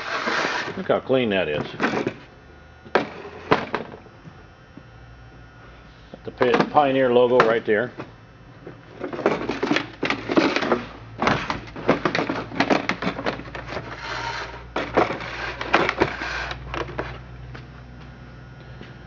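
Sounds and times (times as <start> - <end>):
rustling scrape: 0.0 - 0.8, 12.4 - 17.2.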